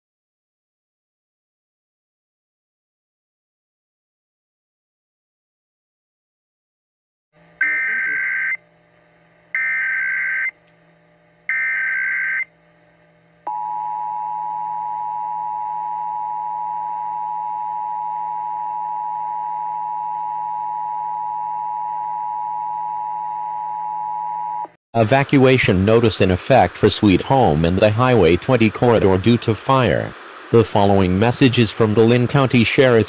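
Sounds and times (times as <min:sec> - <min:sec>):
data burst tones: 0:07.6 - 0:08.6
two-tone alert signal: 0:07.6 - 0:08.6.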